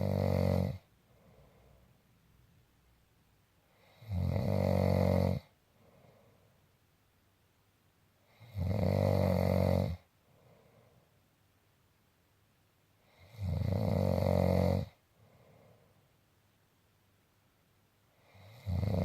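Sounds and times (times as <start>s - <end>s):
person snoring: 0.0s - 1.6s, 3.8s - 5.5s, 8.3s - 10.1s, 13.1s - 15.0s, 18.2s - 19.0s
faint breathing: 0.8s - 2.1s, 5.7s - 6.7s, 10.1s - 11.3s, 15.0s - 16.2s.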